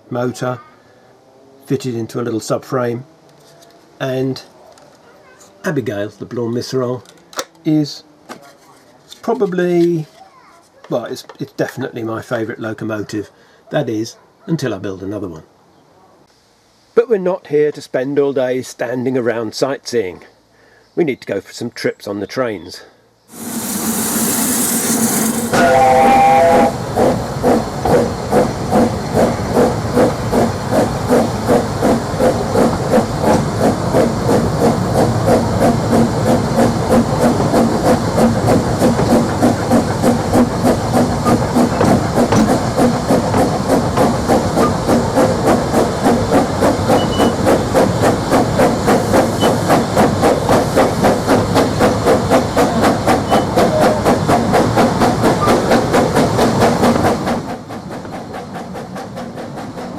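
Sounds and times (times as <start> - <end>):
steam locomotive chuffing: 23.3 - 59.9
train whistle: 23.4 - 26.9.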